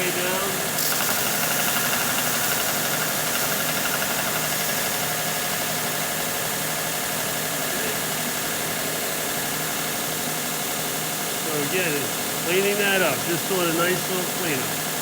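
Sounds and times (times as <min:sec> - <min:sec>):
belt sander running: 0:00.0 - 0:07.5.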